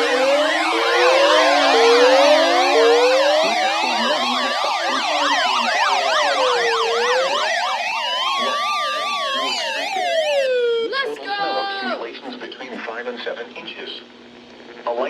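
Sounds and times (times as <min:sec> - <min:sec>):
slow wailing siren: 0:00.0 - 0:11.2
fast yelping siren: 0:00.0 - 0:11.6.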